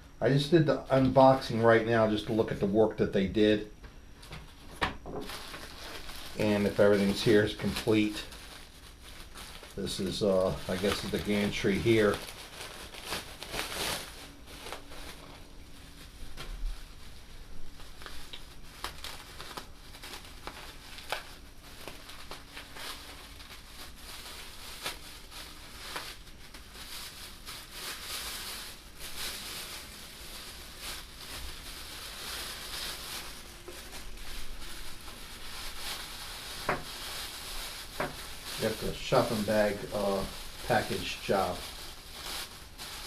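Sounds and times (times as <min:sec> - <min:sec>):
packaging crinkling and rustling: 0:04.2 - 0:43.0.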